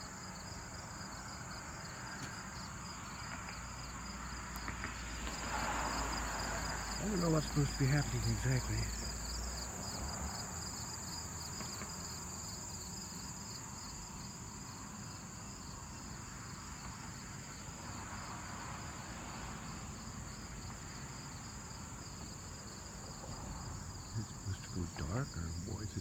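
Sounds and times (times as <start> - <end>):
insects droning: 0.0 - 26.0
insects pulsing chirp: 0.0 - 26.0
low outdoor rumble: 23.0 - 26.0.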